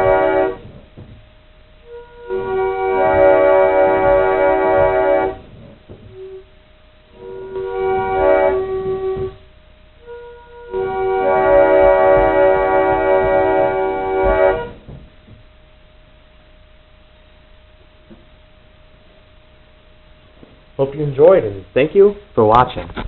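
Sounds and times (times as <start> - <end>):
single organ note: 0.0 - 16.3
pump organ chord blasts: 0.0 - 21.8.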